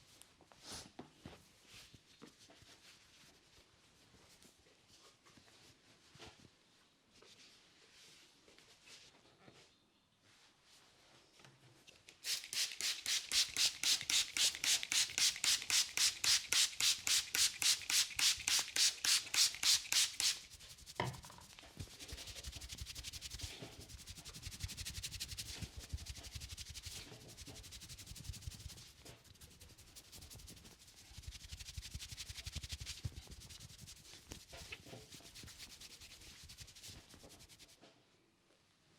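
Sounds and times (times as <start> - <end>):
hands rubbing hair: 12.2 - 37.8.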